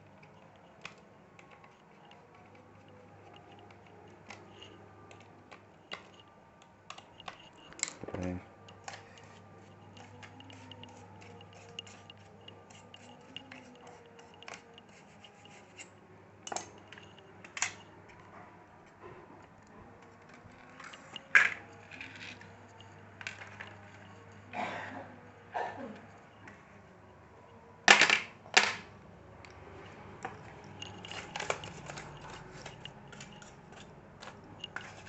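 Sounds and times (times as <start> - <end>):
small plastic and metal clicks: 0.1 - 8.0, 16.5 - 18.2, 30.2 - 35.0.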